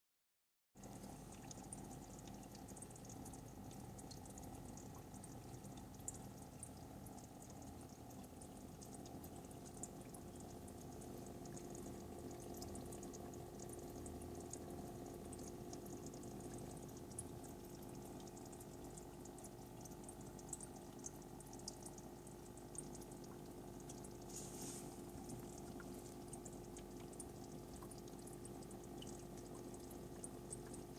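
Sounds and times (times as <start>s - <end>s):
aquarium equipment humming: 0.8s - 30.9s
water bubbling and trickling: 0.8s - 30.9s
small pops and splashes: 15.5s - 30.9s.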